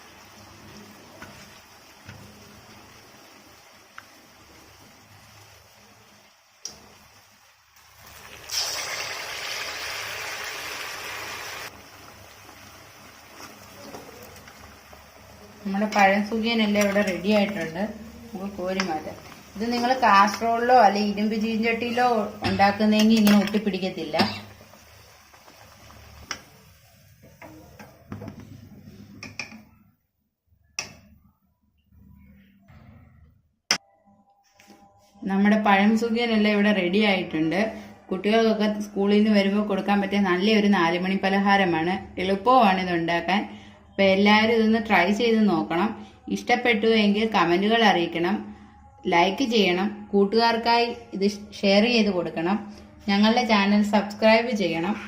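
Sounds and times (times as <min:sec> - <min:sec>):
batter sizzling in oil: 0:00.0 - 0:27.5.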